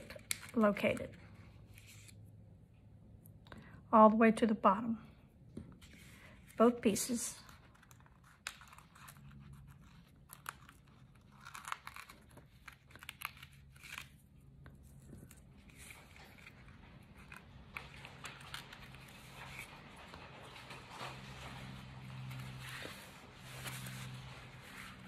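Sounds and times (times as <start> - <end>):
cardstock rustling and crinkling: 5.8 - 25.0.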